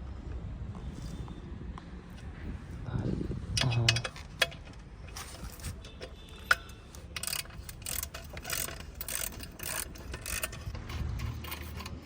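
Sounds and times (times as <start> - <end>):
hand tools clicking on metal: 3.6 - 12.0.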